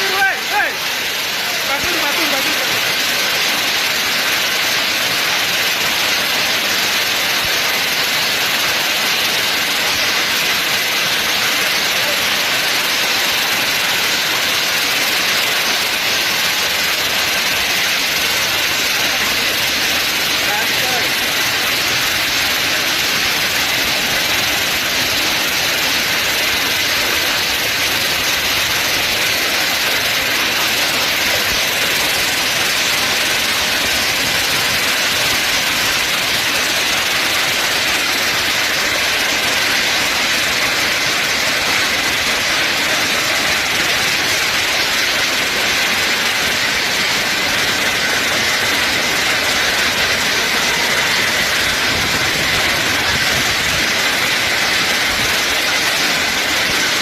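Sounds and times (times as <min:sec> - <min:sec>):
heavy rain and hail: 0:00.0 - 0:57.0.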